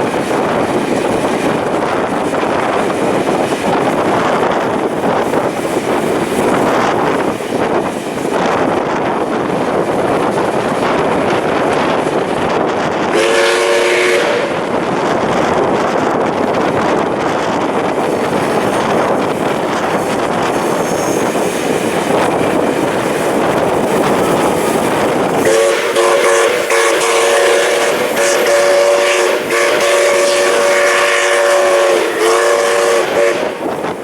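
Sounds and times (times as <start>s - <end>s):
moving train noise: 0.0s - 34.0s
steam locomotive chime whistle: 13.1s - 14.7s, 20.5s - 21.6s, 25.4s - 33.8s.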